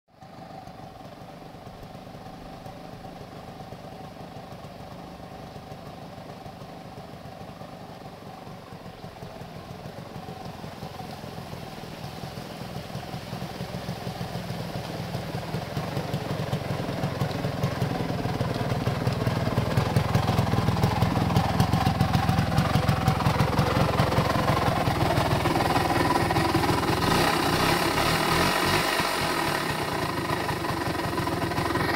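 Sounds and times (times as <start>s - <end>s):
motorcycle engine pulsing: 0.2s - 31.9s.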